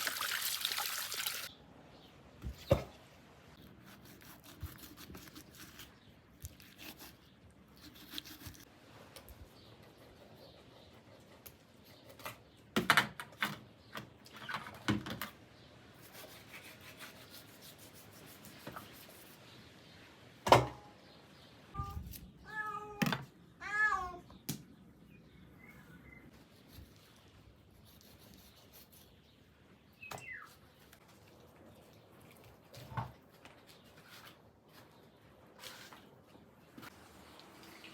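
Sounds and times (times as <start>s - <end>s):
cat meowing: 21.8s - 24.3s.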